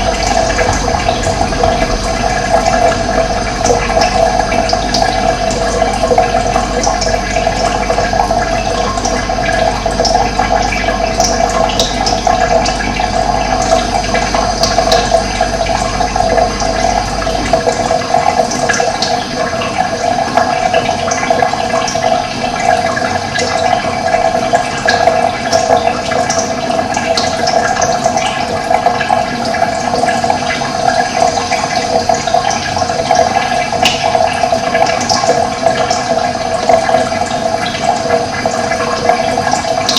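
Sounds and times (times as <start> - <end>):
low hum: 0.0 - 20.7
water rushing: 0.0 - 39.9.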